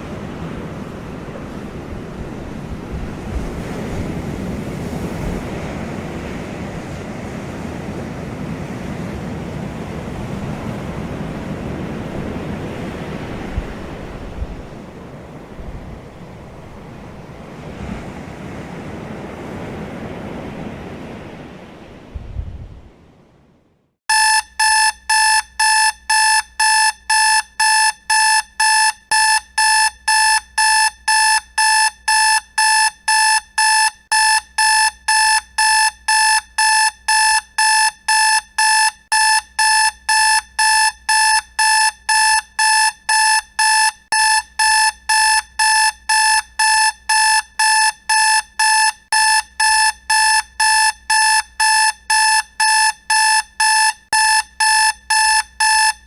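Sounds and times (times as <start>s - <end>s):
alarm clock beeping: 24.1s - 56.0s.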